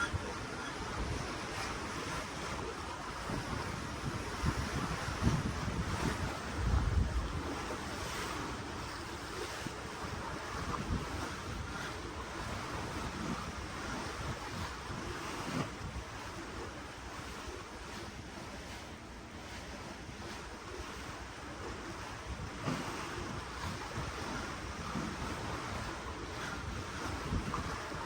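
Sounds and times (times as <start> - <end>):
ocean water rushing: 0.0 - 15.8
wind buffeting microphone: 0.0 - 17.2, 21.6 - 28.0.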